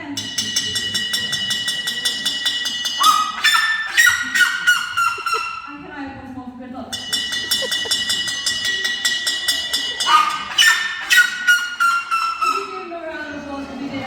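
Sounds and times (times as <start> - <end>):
bird alarm call: 10.1 - 12.8.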